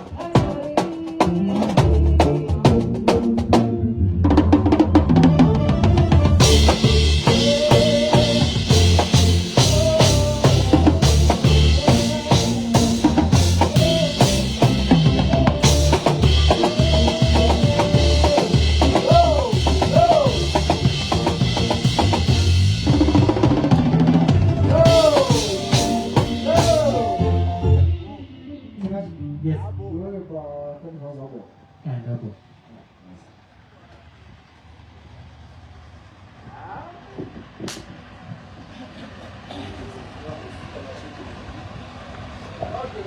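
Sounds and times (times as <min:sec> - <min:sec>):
drum kit beat: 0:00.0 - 0:03.7, 0:04.5 - 0:28.9
live band playing: 0:00.0 - 0:29.4.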